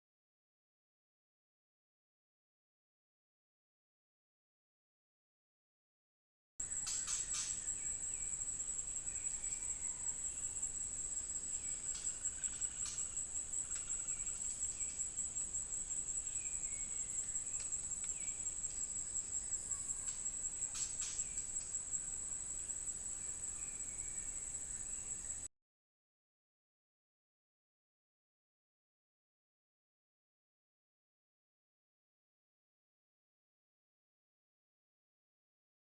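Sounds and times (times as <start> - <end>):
high-pitched insect trill: 6.6 - 25.5.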